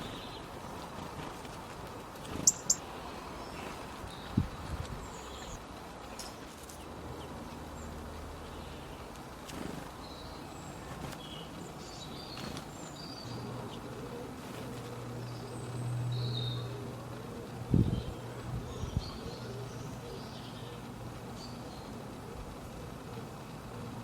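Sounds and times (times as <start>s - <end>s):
birds chirping: 0.0s - 23.8s
steady outdoor hiss: 0.0s - 24.0s.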